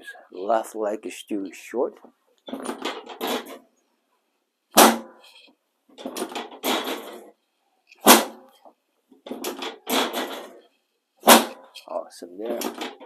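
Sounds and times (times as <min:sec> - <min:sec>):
rustling and clunking: 0:01.5 - 0:03.9, 0:04.7 - 0:13.0
table section knocking down: 0:11.2 - 0:11.6.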